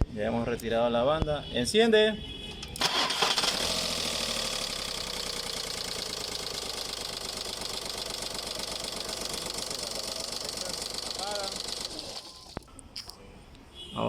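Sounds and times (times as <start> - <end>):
diesel engine idling: 2.8 - 12.7.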